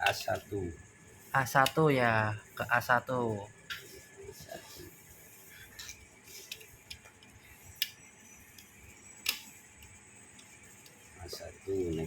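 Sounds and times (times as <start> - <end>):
light clicks and taps on terminals: 1.5 - 2.3, 5.8 - 12.0.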